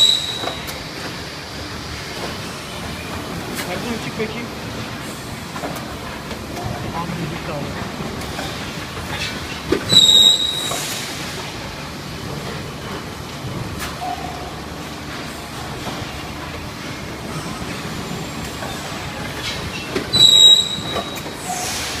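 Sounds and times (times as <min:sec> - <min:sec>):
high-pitched machine squeal: 0:00.0 - 0:00.7, 0:09.9 - 0:10.8, 0:20.1 - 0:21.7
packaging machine clatter and hum: 0:00.0 - 0:22.0.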